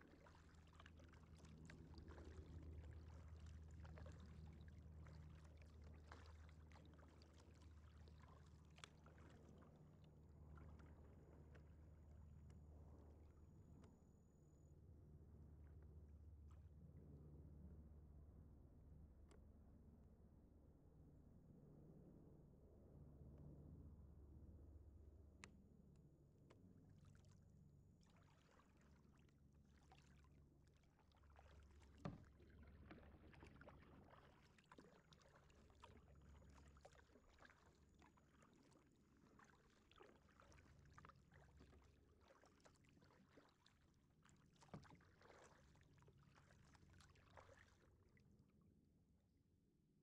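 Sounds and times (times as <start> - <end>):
paddle splashes and drips: 0.0 - 13.8, 26.5 - 48.4.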